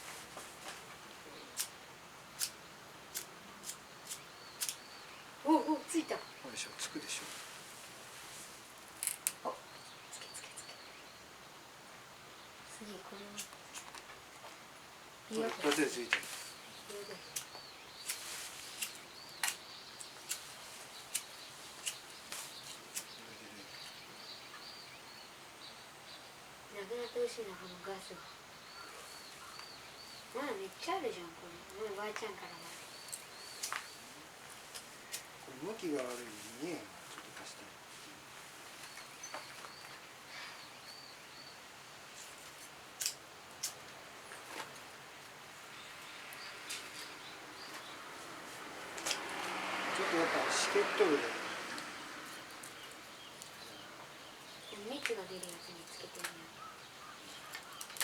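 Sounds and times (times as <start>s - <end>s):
bird chirping: 1.2s - 7.4s, 8.9s - 11.6s, 15.3s - 58.0s
lighter and kindling clicks and snaps: 2.4s - 4.8s, 9.0s - 9.4s, 13.3s - 14.0s, 17.3s - 20.5s, 21.1s - 23.2s, 43.0s - 43.8s
wood fire crackling and popping: 8.8s - 9.5s, 15.3s - 23.2s, 31.7s - 35.4s, 54.4s - 56.4s, 57.3s - 58.0s.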